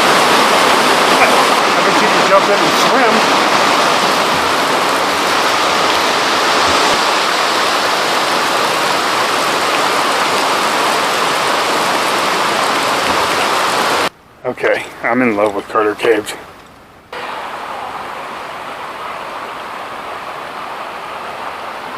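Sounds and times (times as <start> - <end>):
rush of running water: 0.0 - 16.5, 17.1 - 21.9.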